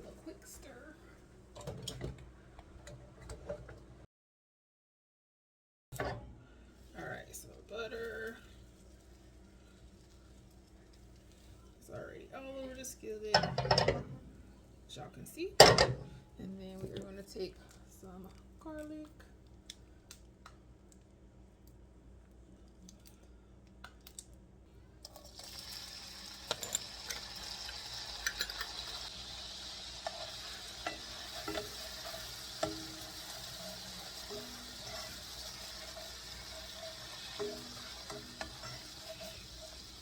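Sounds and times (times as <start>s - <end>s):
garlic sizzling in butter: 25.1s - 40.0s
utensil scraping a pan: 29.9s - 40.0s.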